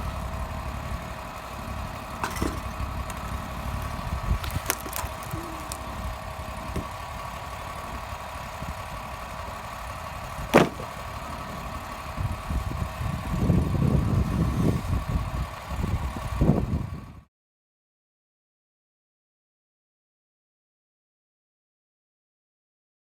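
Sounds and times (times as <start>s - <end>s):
engine running: 0.0s - 17.3s
sharp metallic clank: 2.2s - 2.7s.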